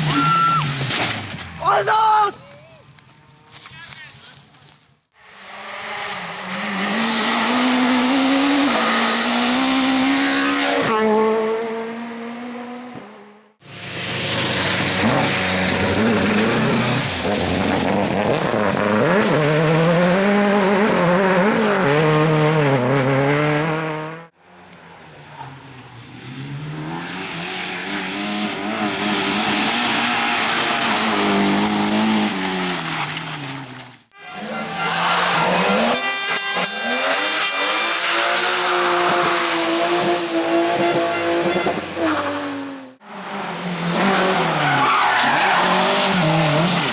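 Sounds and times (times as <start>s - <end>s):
tyre squeal: 0.0s - 0.8s
race car engines revving: 5.2s - 46.9s.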